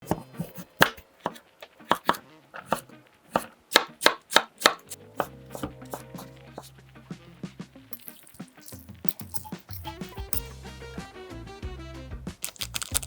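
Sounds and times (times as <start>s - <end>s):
knife chopping on cutting board: 0.0s - 6.7s.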